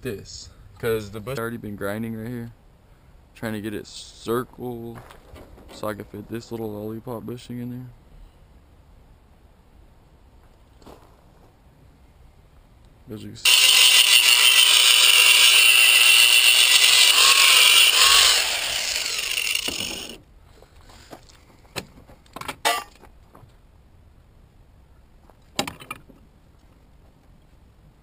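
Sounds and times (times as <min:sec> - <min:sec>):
power grinder grinding metal: 0:13.5 - 0:20.2.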